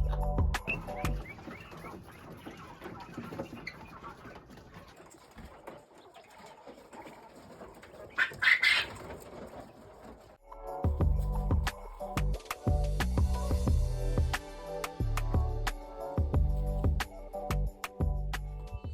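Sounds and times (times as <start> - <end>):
poultry calling: 0.0 - 10.3.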